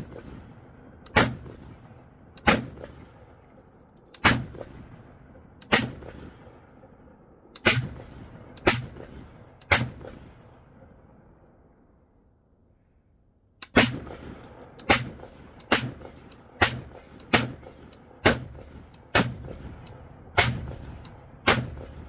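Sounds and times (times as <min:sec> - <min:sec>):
rifle firing single shots: 0:00.0 - 0:03.3, 0:04.1 - 0:04.9, 0:05.6 - 0:06.6, 0:07.6 - 0:10.6, 0:13.6 - 0:22.0.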